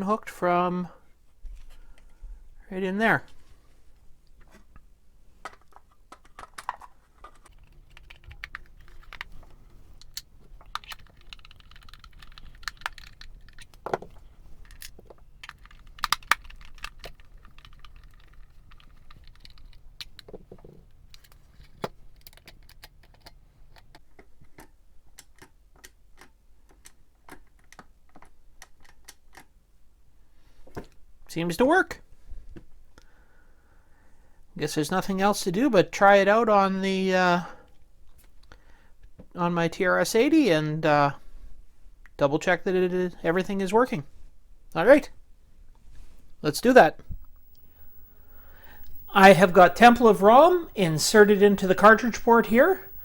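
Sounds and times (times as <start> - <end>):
faint low hum: 7.5 - 24.0, 46.6 - 53.0
plastic joystick clicks: 7.5 - 24.0, 47.0 - 53.0.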